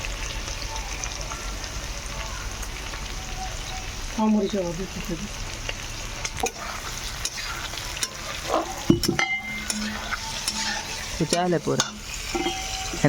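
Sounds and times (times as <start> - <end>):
food sizzling in a pan: 0.0 - 13.0
utensil knocking against pan: 8.9 - 10.6.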